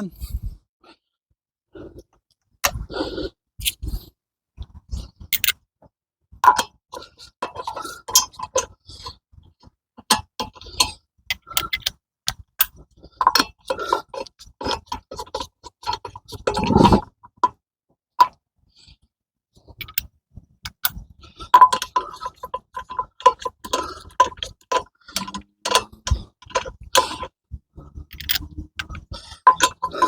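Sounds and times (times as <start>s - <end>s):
metal clinks of wheel and lug nuts: 21.6s - 27.3s, 28.0s - 30.0s.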